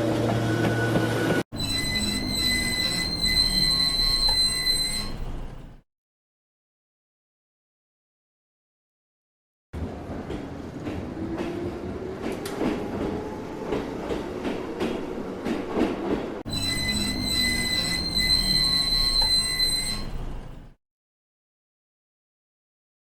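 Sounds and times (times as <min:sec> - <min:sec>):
wheel flange squeal: 0:00.0 - 0:05.5, 0:16.5 - 0:20.3.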